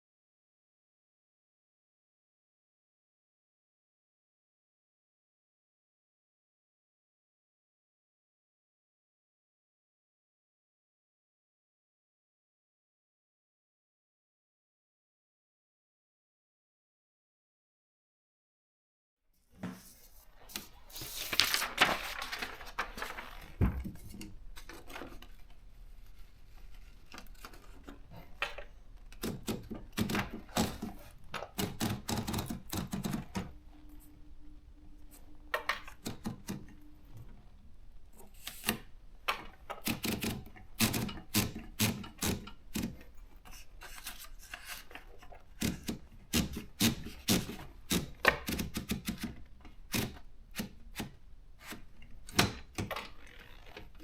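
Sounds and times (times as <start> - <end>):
typewriter typing clicks: 29.2 - 33.6, 35.6 - 36.9, 38.4 - 43.0, 45.6 - 53.1
low steady hum: 33.2 - 38.4.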